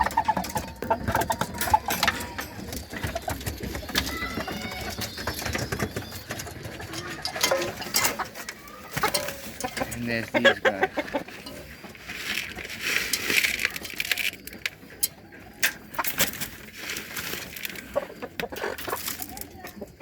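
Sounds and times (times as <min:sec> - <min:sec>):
pigeons cooing: 0:00.0 - 0:20.0.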